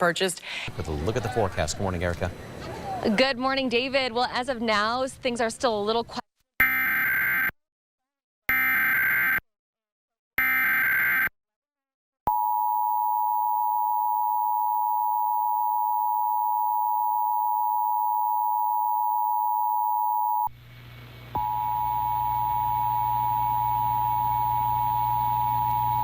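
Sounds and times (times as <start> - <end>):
background hum and hiss: 0.0 - 6.2, 20.4 - 26.0.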